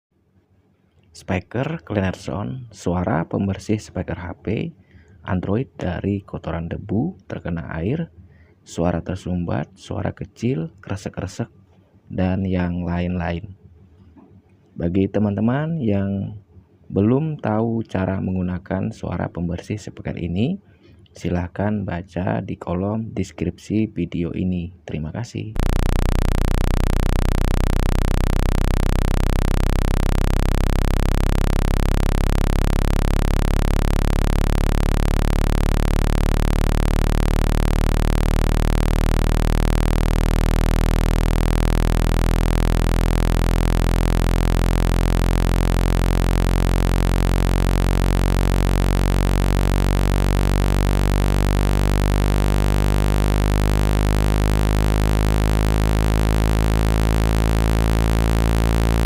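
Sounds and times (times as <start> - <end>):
deep synthesized tone: 25.6 - 59.0.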